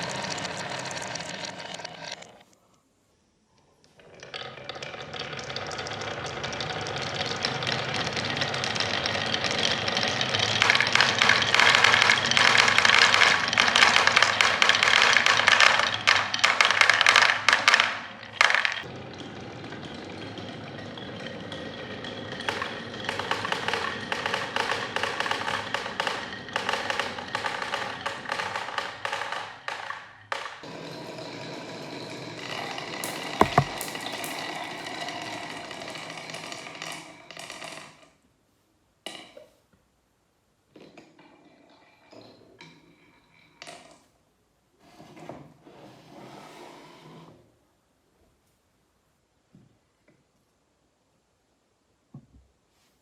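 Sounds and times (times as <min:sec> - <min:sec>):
marbles rolling down wooden slopes: 0:00.0 - 0:02.4, 0:33.0 - 0:34.9.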